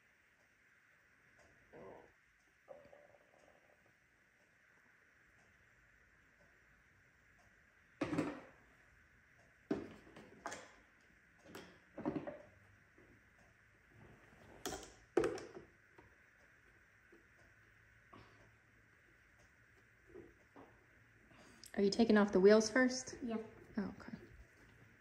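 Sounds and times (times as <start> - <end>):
hard plastic knocks and clatters: 11.5 - 12.5.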